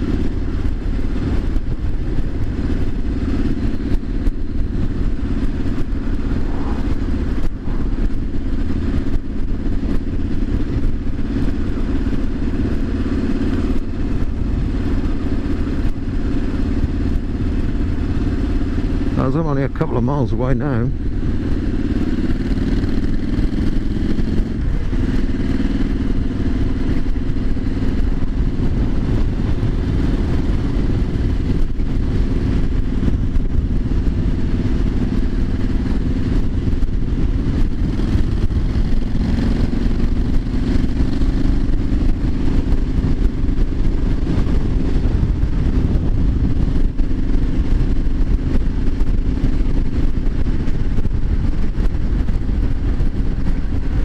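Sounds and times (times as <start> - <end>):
motorcycle engine cruising: 0.0 - 54.0
wind and road noise: 0.0 - 54.0.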